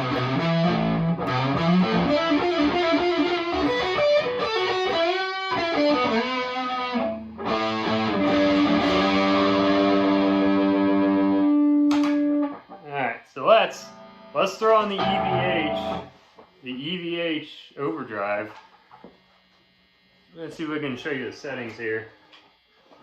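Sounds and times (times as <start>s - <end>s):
distorted electric guitar: 0.0s - 16.5s.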